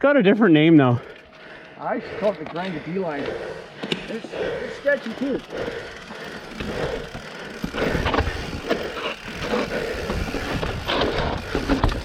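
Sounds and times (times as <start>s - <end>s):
bike tyres rolling over rock: 2.5s - 12.0s
bike knocks and rattles: 4.9s - 12.0s.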